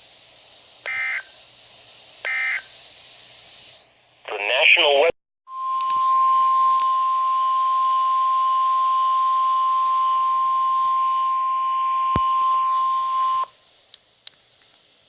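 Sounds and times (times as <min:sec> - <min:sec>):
radio hiss: 0:00.0 - 0:14.8
steady warning alarm tone: 0:00.9 - 0:01.4, 0:02.3 - 0:02.7, 0:05.5 - 0:13.5.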